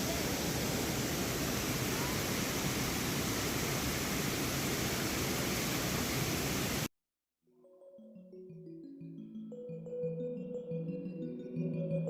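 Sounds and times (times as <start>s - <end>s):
waterfall rushing: 0.0s - 6.9s.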